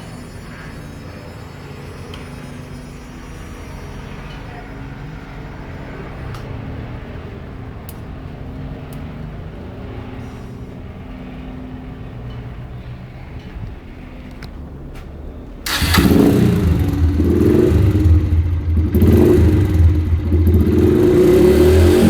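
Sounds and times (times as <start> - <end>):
motorcycle engine running: 15.7 - 22.0.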